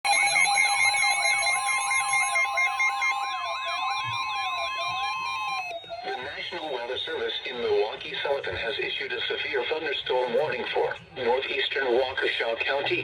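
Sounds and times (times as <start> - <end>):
steady electronic tone: 0.1 - 7.8
warbling siren-like alert tones: 0.1 - 7.9.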